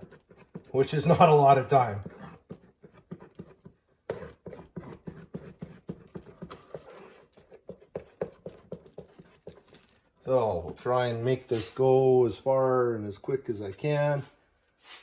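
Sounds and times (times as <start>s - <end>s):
small tool tapping and scraping: 0.0s - 11.0s.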